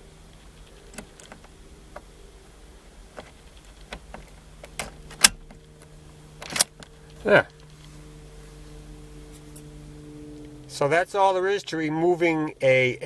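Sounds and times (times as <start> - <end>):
small metallic clicks: 3.2 - 7.9.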